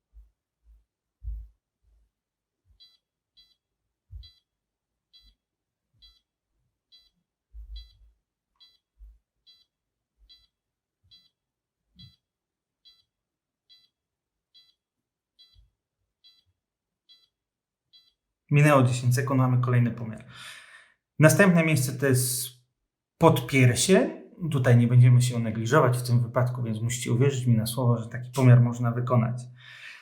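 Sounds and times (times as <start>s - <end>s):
heart monitor beeps: 2.8s - 4.4s, 5.2s - 5.4s, 6.0s - 6.2s, 6.9s - 8.0s, 8.6s - 8.8s, 9.5s - 9.7s, 10.3s - 10.5s, 11.1s - 11.3s, 12.9s - 13.1s, 13.7s - 13.9s, 15.4s - 15.6s, 16.2s - 16.4s, 17.1s - 17.3s.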